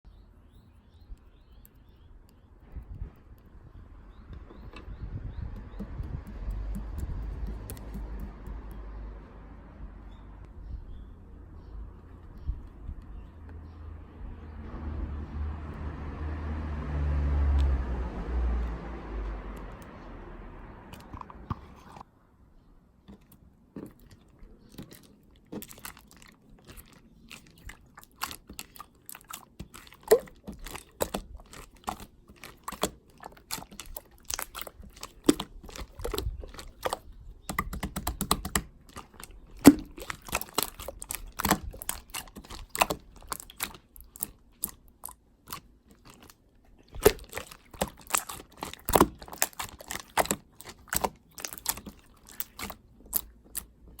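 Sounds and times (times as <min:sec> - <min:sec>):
crisp clicks and crunches: 0:23.1 - 0:54.0.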